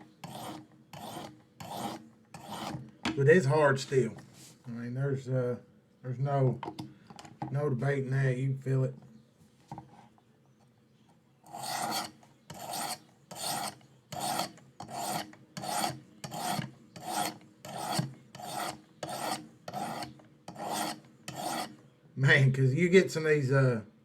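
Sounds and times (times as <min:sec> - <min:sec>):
sharpening stone rasping on knife: 0:00.2 - 0:02.8, 0:11.5 - 0:21.8.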